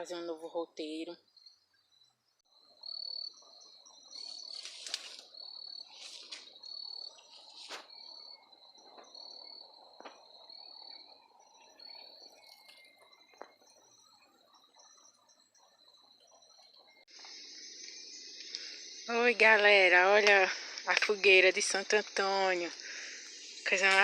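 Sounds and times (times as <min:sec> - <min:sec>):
cricket chirping: 0:00.0 - 0:24.0
low hiss: 0:17.1 - 0:24.0.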